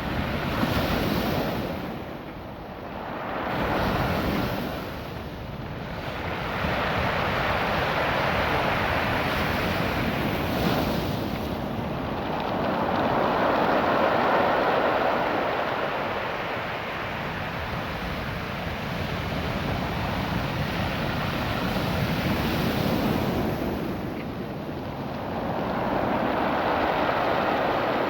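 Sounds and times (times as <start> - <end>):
surf washing over stones: 6.0 - 28.0.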